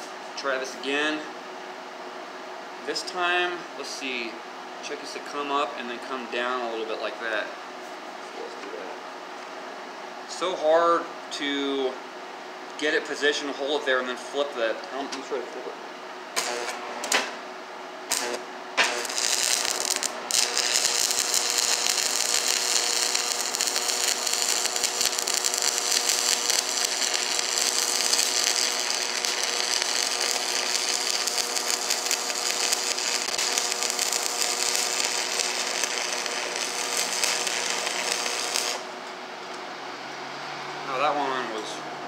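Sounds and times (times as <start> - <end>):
welding arc crackling: 16.4 - 17.3, 18.1 - 39.0.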